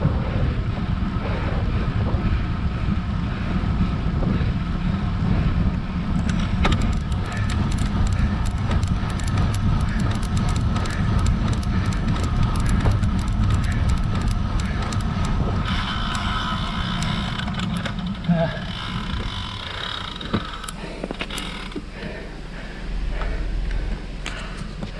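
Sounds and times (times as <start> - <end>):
road rumble: 0.0 - 24.9
wind noise: 0.0 - 24.9
bike freewheel ticking: 2.3 - 22.2.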